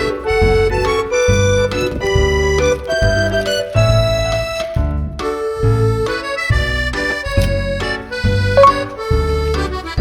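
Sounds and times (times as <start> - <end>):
bass line: 8.6 - 9.0.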